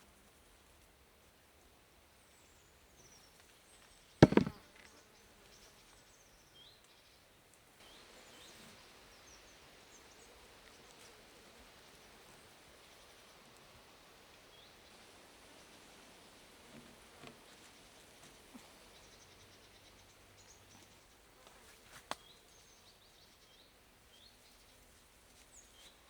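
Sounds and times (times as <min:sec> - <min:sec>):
sharp knock on wood: 0:04.2 - 0:04.6.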